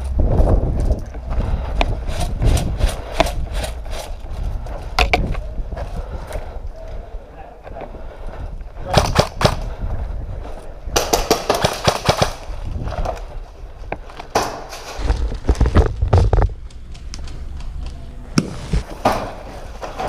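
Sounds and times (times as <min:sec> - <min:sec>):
airsoft guns firing: 0:08.9 - 0:09.7, 0:10.9 - 0:12.5.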